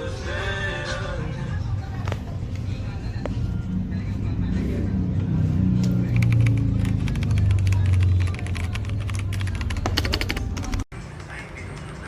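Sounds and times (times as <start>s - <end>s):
mechanical keyboard key clicks: 6.1s - 10.8s.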